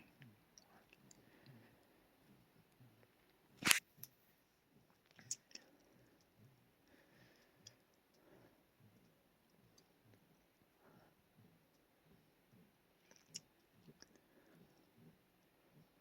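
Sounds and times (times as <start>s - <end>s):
sharp click: 3.6s - 3.9s.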